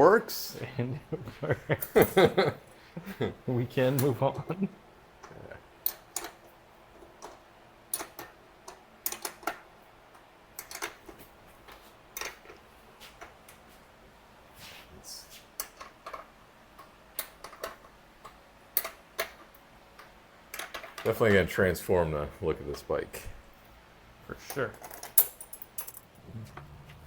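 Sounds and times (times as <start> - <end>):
hand tools clicking and knocking: 7.2 - 9.6.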